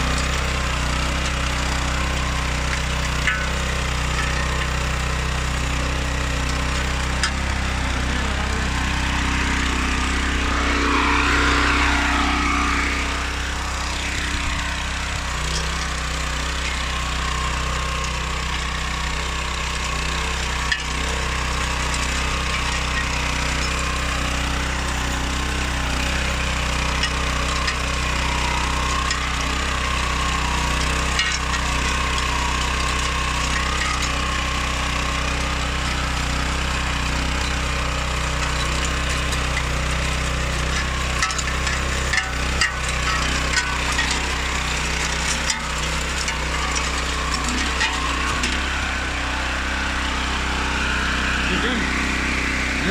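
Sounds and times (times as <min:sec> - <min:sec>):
petrol engine running: 0:00.0 - 0:52.9.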